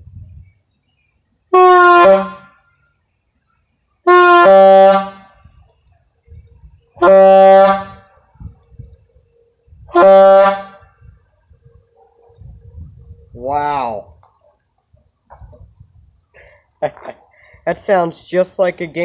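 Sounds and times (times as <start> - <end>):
diaphragm air horn blasts: 1.5 - 2.6, 4.0 - 5.6, 6.9 - 8.5, 9.8 - 11.3.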